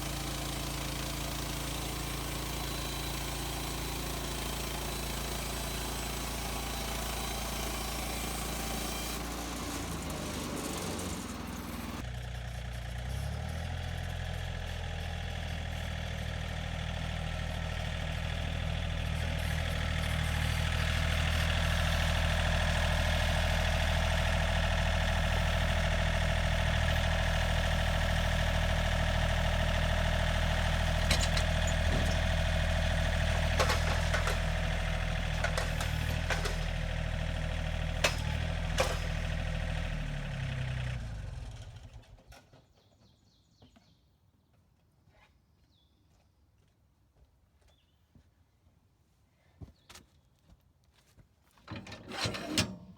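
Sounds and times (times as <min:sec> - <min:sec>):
bandsaw mill engine running: 0:00.0 - 0:42.1.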